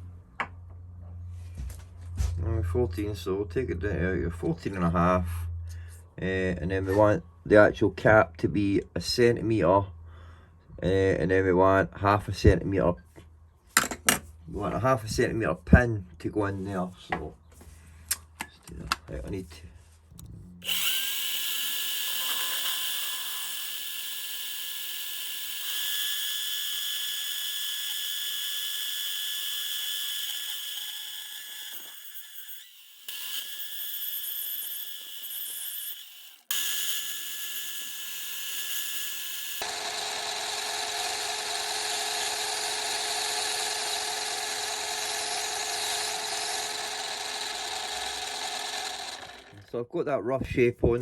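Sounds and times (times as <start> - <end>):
lathe motor whine: 20.6 - 34.1, 34.7 - 49.6.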